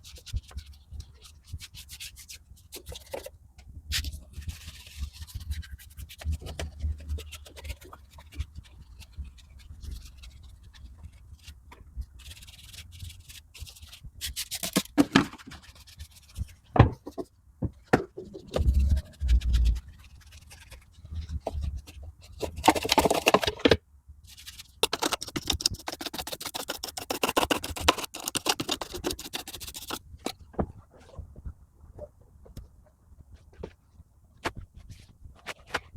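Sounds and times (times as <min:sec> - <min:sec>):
hand scrubbing surfaces: 0:18.2 - 0:20.8.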